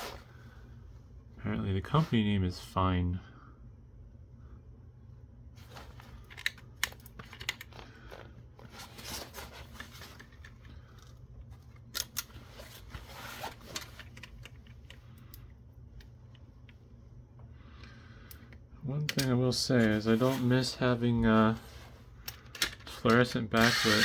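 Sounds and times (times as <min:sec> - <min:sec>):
steady low hum: 0:00.0 - 0:24.0
scraping and crinkling: 0:05.6 - 0:15.0.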